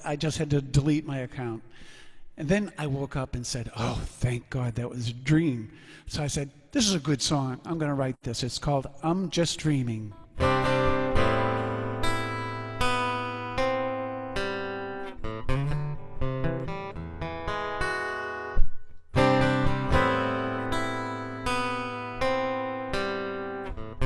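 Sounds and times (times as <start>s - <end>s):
acoustic guitar strumming: 10.2s - 24.0s.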